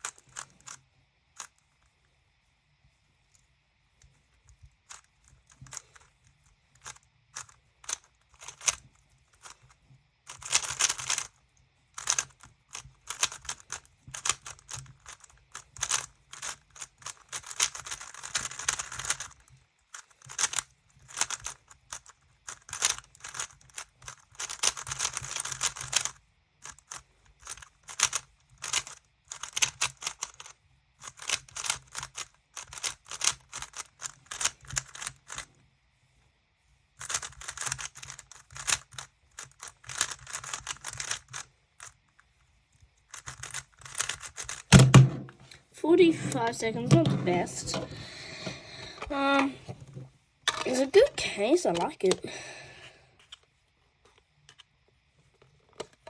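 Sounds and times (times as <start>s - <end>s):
puzzle cube plastic clicks: 0.0s - 0.8s, 4.6s - 11.4s, 12.0s - 35.5s, 37.0s - 42.0s, 43.1s - 45.3s.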